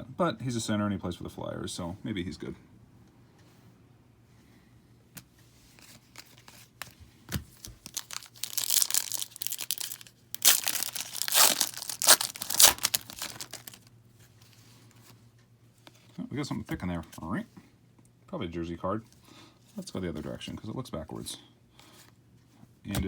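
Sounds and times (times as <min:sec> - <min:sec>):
wrapper tearing and crinkling: 0:07.6 - 0:13.9.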